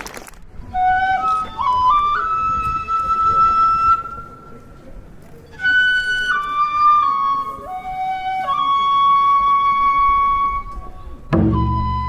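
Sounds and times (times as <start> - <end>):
bamboo flute solo: 0.5 - 12.0.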